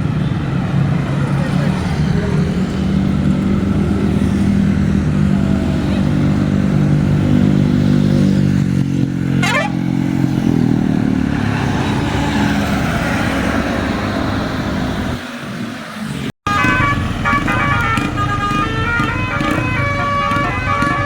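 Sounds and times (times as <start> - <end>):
bus diesel engine running: 16.5 - 21.0.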